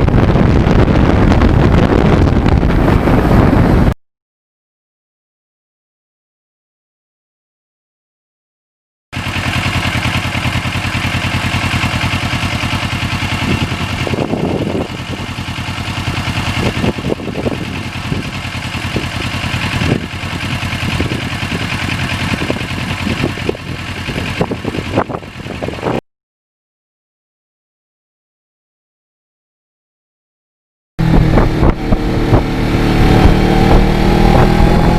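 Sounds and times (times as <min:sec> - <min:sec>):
motorcycle engine idling: 0:09.2 - 0:26.0.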